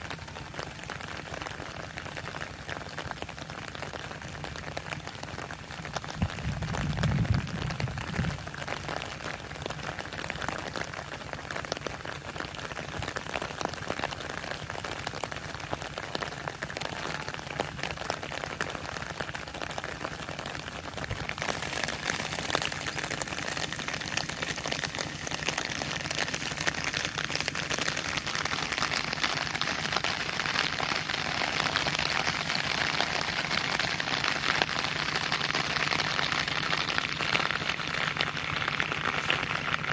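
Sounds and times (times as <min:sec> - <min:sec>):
heavy rain pattering: 0:00.0 - 0:39.9
low rumble: 0:06.1 - 0:08.6.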